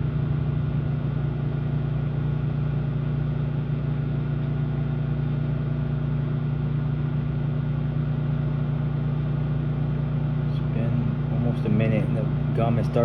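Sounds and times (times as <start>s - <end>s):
microwave oven humming: 0.0s - 13.0s.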